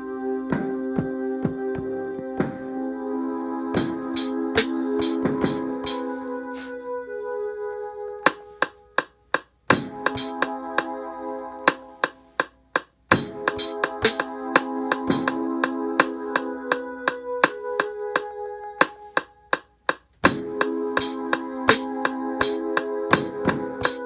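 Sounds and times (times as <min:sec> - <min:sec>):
held keyboard chords: 0:00.0 - 0:09.1, 0:13.1 - 0:19.6, 0:20.2 - 0:24.0
drum machine hits: 0:12.4 - 0:14.3.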